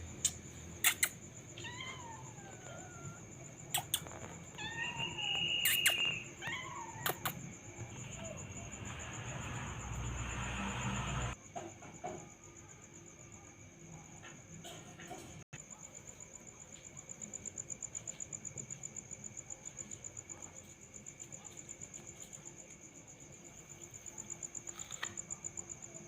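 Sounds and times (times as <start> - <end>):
cat meowing: 1.0 - 3.2, 3.8 - 7.4.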